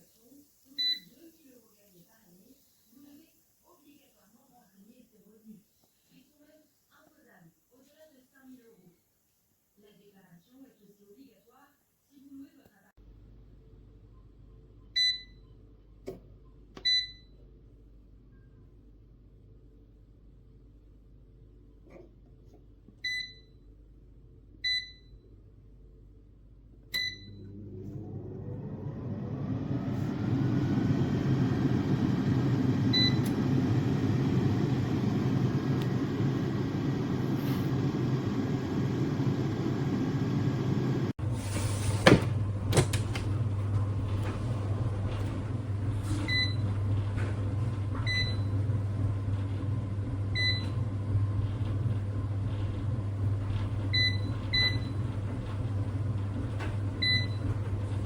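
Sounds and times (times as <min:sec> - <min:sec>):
air fryer fan humming: 0:26.9 - 0:58.0
touch panel beeps: 0:32.9 - 0:33.4.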